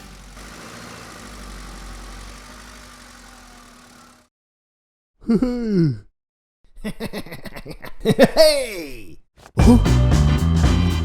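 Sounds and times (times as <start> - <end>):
cartoon vehicle engine rumble: 0.0 - 4.3.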